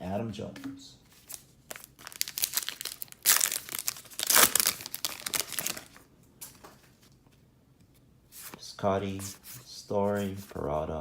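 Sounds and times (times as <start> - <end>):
foil wrapper crinkling and tearing: 1.3 - 6.0.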